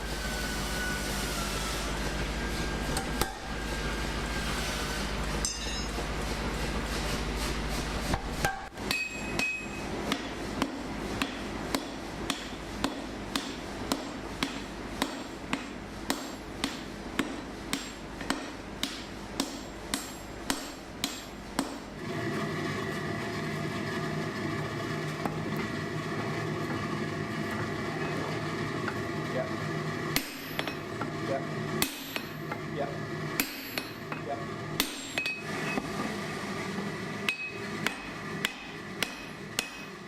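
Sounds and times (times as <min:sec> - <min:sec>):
steady humming with held tones: 0:00.0 - 0:40.0
hammer striking steel: 0:05.4 - 0:06.1, 0:08.2 - 0:21.8, 0:30.2 - 0:30.9, 0:31.8 - 0:32.6, 0:33.4 - 0:34.2, 0:34.8 - 0:35.8, 0:37.3 - 0:40.0.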